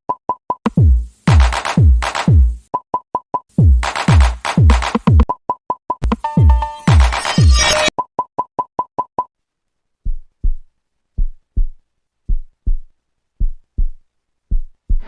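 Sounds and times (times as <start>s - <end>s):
short high beeps: 6.1s - 7.9s.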